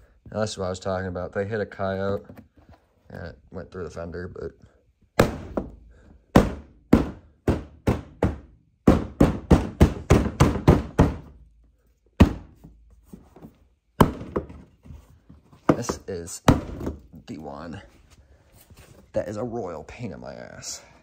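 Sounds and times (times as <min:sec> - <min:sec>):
sharp knocks on car body: 0:05.2 - 0:11.4, 0:12.2 - 0:12.7, 0:14.0 - 0:14.7.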